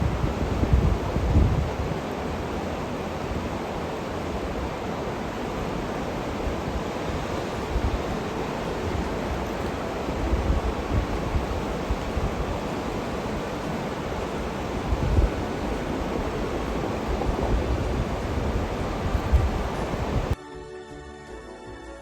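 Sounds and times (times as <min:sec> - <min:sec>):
river water rushing: 0:00.0 - 0:20.4
wind buffeting microphone: 0:00.0 - 0:20.4.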